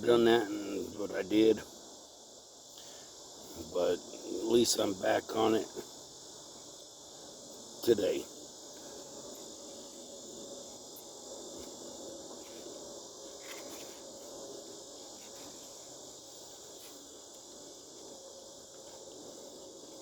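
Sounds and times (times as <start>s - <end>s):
insects chirring: 0.0s - 20.0s.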